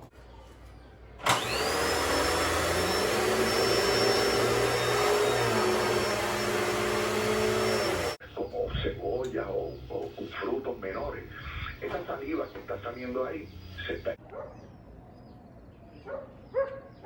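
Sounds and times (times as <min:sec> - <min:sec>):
appliance motor whining: 0:01.2 - 0:08.2.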